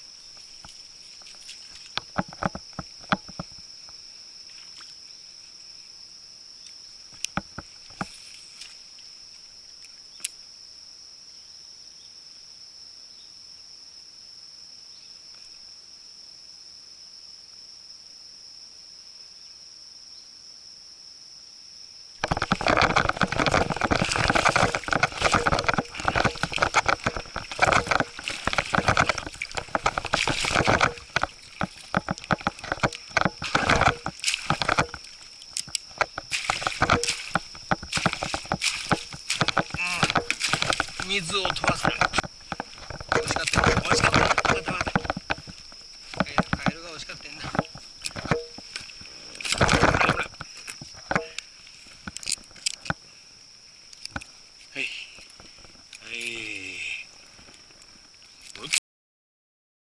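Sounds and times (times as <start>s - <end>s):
water splashing and knocking: 0.4s - 4.0s, 7.1s - 8.7s, 22.2s - 51.4s
high-pitched insect drone: 21.8s - 58.6s.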